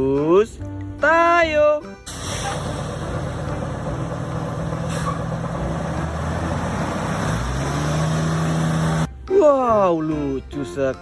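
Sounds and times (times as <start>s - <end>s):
large vehicle engine running: 2.1s - 9.2s.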